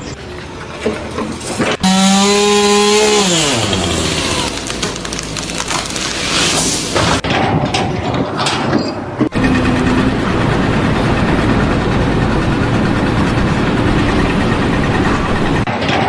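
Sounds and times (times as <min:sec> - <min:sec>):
heavy engine running: 0:00.0 - 0:07.2, 0:09.2 - 0:15.7.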